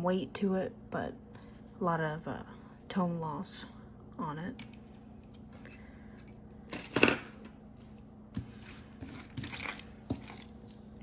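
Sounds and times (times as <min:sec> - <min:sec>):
low steady hum: 0:00.0 - 0:11.0
jewelry clinking and clattering: 0:05.7 - 0:07.4, 0:08.6 - 0:11.0.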